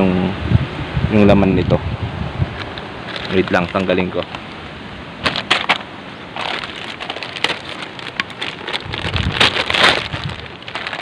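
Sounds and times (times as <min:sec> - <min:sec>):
cable scraping and clicking: 0:06.4 - 0:11.0.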